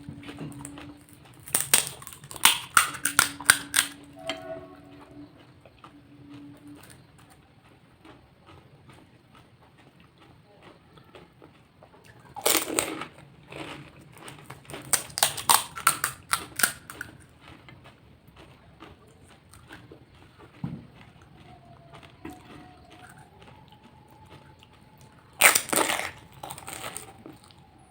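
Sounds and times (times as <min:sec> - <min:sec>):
crisp shells crunching: 0:00.0 - 0:04.1, 0:12.0 - 0:17.6, 0:21.2 - 0:27.6
faint chewing clicks: 0:05.2 - 0:27.8.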